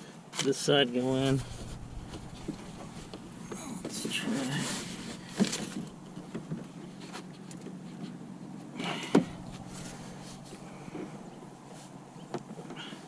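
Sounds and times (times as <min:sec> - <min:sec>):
faint steady hum: 0:01.1 - 0:07.7, 0:08.3 - 0:13.0
scraping rustle: 0:09.1 - 0:13.0.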